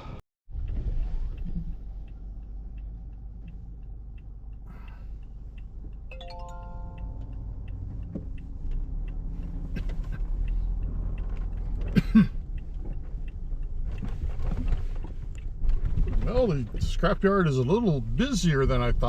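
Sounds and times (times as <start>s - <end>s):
vehicle engine rumbling: 0.0s - 19.0s
faint regular ticking: 1.7s - 14.2s.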